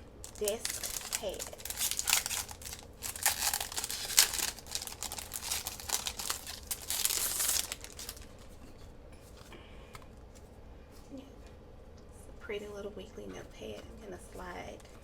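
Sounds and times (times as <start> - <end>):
packaging crinkling and rustling: 0.2 - 8.6.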